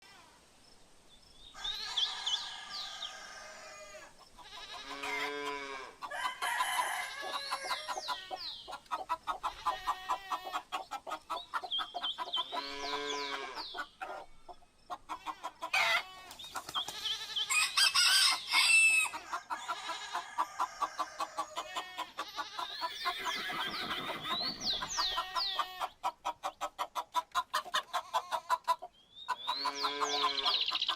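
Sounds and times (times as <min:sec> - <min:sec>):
small birds chirping: 0:00.6 - 0:30.9
rooster crowing: 0:01.6 - 0:04.1, 0:04.8 - 0:08.4, 0:17.5 - 0:22.1
chickens clucking: 0:01.6 - 0:30.9.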